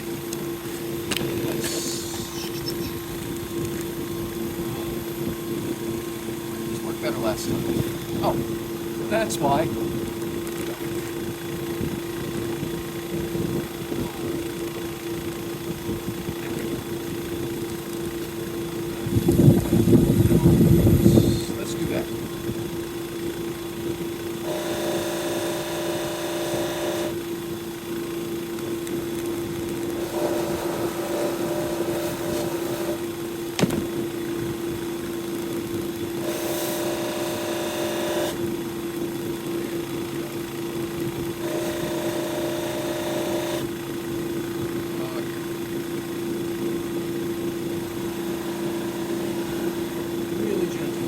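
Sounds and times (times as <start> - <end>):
buffing wheel motor hum: 0.0 - 51.0
rushing of buffing contact: 30.0 - 33.1, 48.0 - 50.2.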